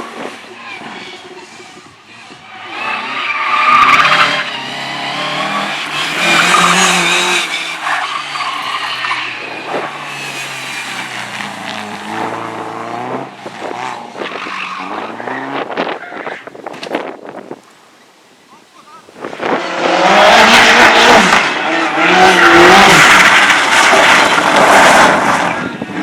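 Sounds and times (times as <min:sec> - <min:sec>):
tyres squealing: 0:00.8 - 0:12.6
race car engine revving: 0:01.6 - 0:15.9, 0:19.4 - 0:26.0.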